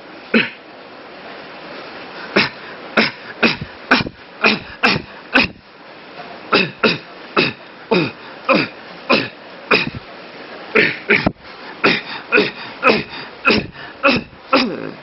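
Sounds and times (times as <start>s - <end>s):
man fake-coughing: 2.4s - 5.6s, 6.5s - 10.0s, 10.8s - 15.0s.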